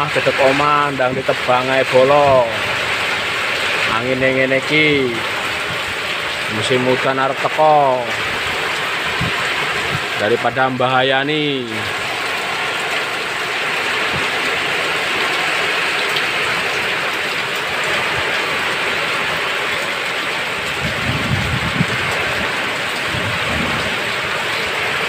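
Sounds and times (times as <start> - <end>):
rain hiss: 0.0 - 25.0
wind buffeting the microphone: 8.2 - 10.2, 20.6 - 24.4.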